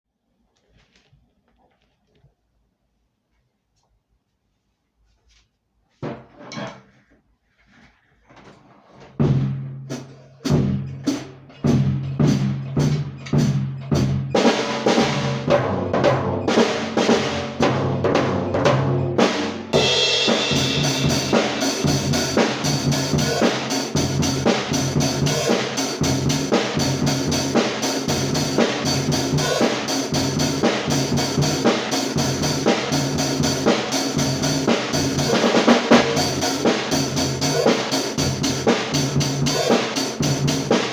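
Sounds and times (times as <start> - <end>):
full drum kit beat with snare: 9.0 - 40.9
kick and low drums: 9.2 - 9.8, 10.5 - 40.9
cymbals: 9.9 - 40.9.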